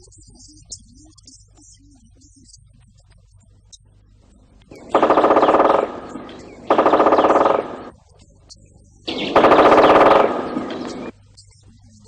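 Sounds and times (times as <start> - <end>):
rapid pulsing rattle: 4.7 - 7.9, 9.1 - 11.1.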